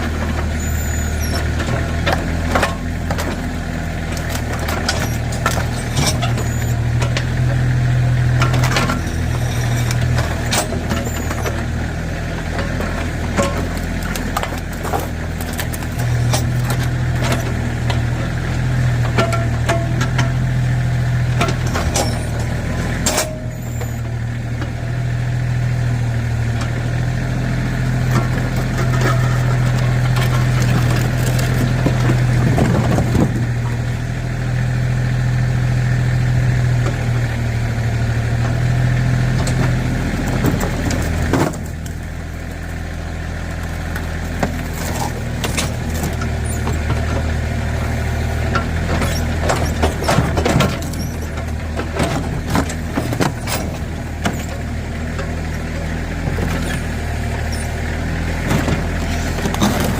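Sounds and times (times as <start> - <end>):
backhoe engine running: 0.0 - 59.9
machine clanks and knocks: 19.1 - 20.5.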